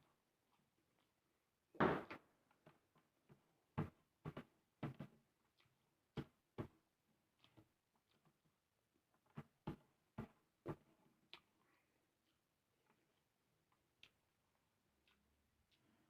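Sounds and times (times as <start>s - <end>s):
mouth chewing and smacking: 12.2s - 16.0s.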